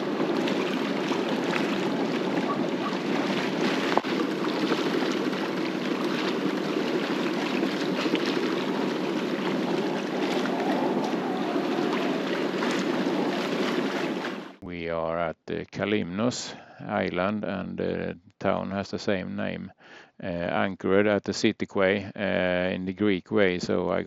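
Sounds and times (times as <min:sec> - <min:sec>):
water rushing: 0:00.0 - 0:14.6
boat engine: 0:00.0 - 0:14.8
wind: 0:00.0 - 0:14.9.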